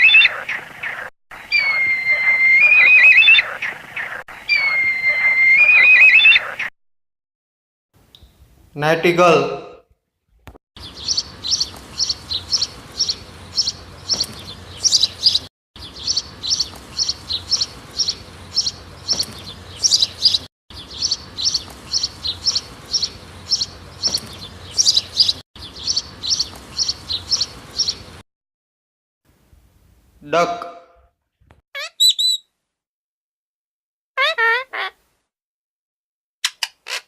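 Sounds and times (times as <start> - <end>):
recorded nightingale chirp: 0.0 - 0.4, 1.4 - 6.6, 10.8 - 28.0, 31.8 - 32.4.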